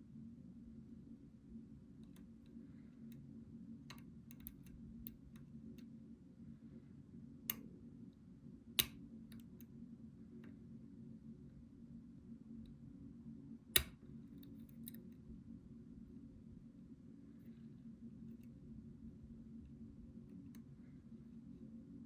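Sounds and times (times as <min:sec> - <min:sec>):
low steady hum: 0:00.0 - 0:22.0
lock pick clicking in lock: 0:03.9 - 0:05.5, 0:08.8 - 0:09.6, 0:13.8 - 0:15.1.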